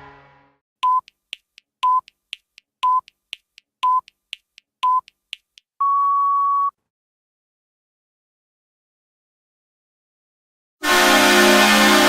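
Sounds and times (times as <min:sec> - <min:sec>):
short high beeps: 0:00.8 - 0:01.1
goal horn: 0:10.8 - 0:12.0.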